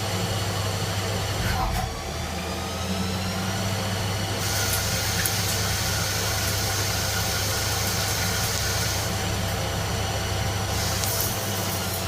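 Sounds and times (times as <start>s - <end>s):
machine tool humming: 0.0s - 12.0s
higher hiss: 10.7s - 12.0s.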